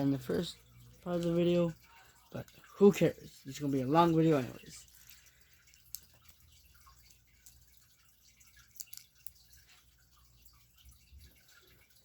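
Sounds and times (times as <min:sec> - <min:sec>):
plastic pieces clicking: 0:08.6 - 0:09.4.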